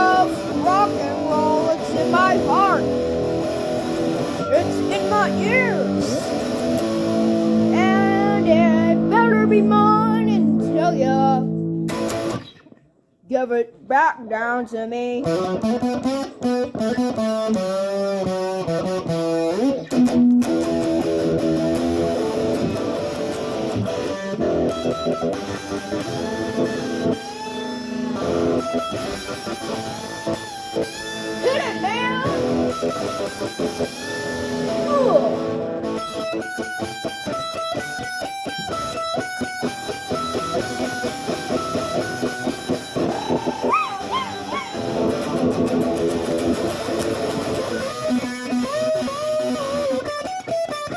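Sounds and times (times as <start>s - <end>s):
electric guitar rock music: 0.0s - 12.8s, 14.3s - 50.9s.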